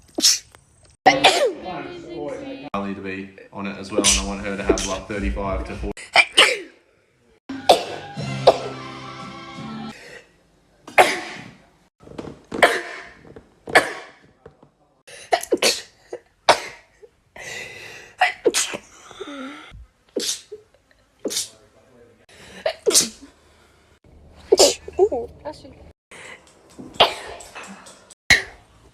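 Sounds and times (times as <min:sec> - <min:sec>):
person sneezing: 0:04.0 - 0:05.0, 0:06.0 - 0:06.8, 0:07.6 - 0:08.7, 0:10.9 - 0:11.6, 0:18.2 - 0:18.9, 0:20.2 - 0:20.6, 0:21.2 - 0:21.6, 0:22.6 - 0:23.3, 0:24.5 - 0:24.9.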